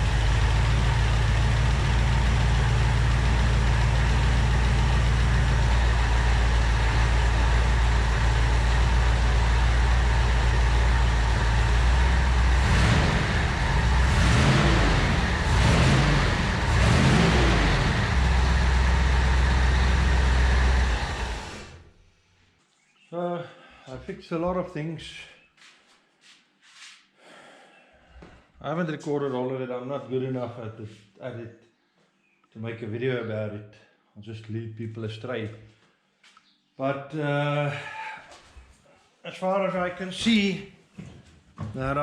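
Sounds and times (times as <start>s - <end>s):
jeep engine running and revving: 0.0s - 21.8s.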